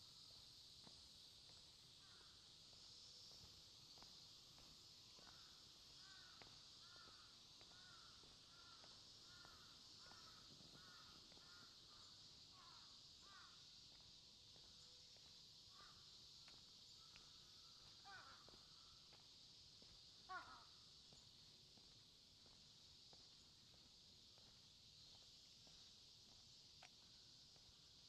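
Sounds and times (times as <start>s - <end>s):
crow cawing faintly: 2.0s - 2.5s, 5.2s - 13.7s, 15.7s - 19.2s, 20.2s - 20.9s.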